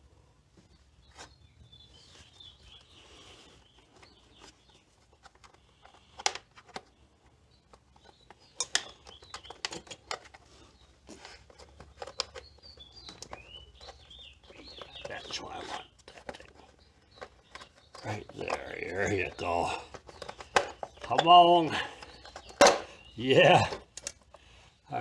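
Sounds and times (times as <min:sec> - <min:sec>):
birds chirping: 0:00.1 - 0:25.0
hands clicking and knocking on metal parts: 0:04.4 - 0:06.9, 0:07.7 - 0:24.5.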